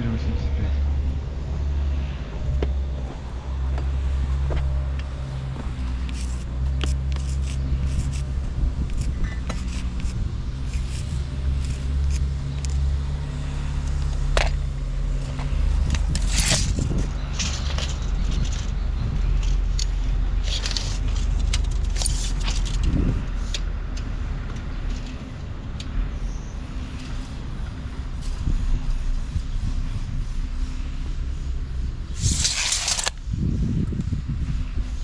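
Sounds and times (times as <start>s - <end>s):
clinks and scrapes: 6.0s - 12.3s, 15.8s - 18.8s, 19.4s - 23.6s, 32.2s - 33.2s
motor humming: 32.1s - 33.1s.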